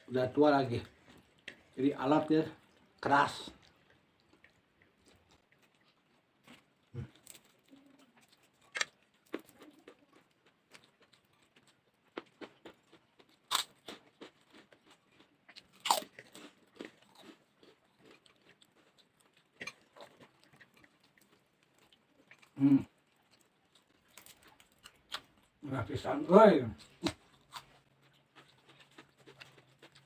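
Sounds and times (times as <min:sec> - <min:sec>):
chewing crunchy food: 0:00.0 - 0:30.0.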